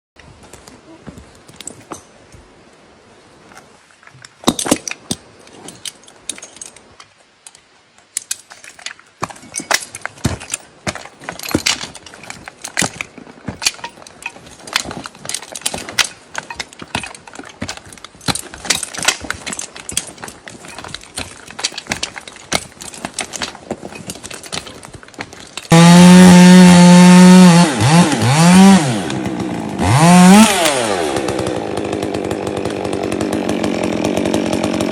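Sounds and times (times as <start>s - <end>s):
metallic clinking and knocking: 4.1s - 7.6s, 8.2s - 25.7s.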